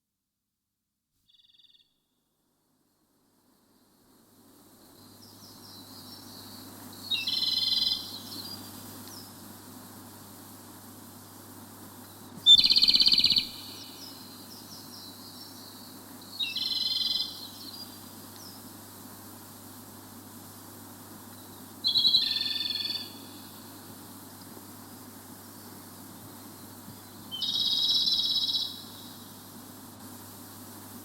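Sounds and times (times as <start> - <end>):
faint outdoor background: 0.1 - 31.0
songbird singing high phrases: 5.5 - 8.6, 12.5 - 18.0, 21.8 - 23.3, 27.3 - 28.9.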